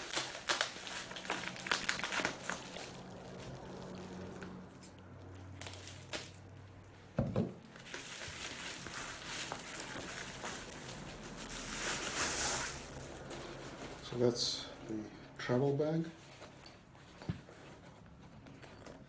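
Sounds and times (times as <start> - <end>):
wrapping rustling and crinkling: 0.0 - 19.0
knock on packaging: 7.2 - 7.6.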